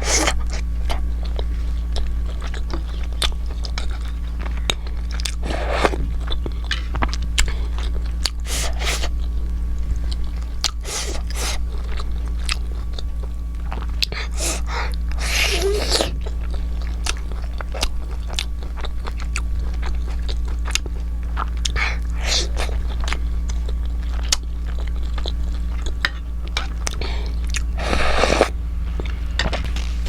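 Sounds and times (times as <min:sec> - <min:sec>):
person chewing close up: 0:00.0 - 0:30.0
steady low hum: 0:00.0 - 0:30.0
hissy mouth sounds: 0:05.4 - 0:06.1, 0:08.4 - 0:09.2, 0:10.8 - 0:11.7, 0:14.0 - 0:16.4, 0:21.7 - 0:22.8, 0:26.9 - 0:28.6.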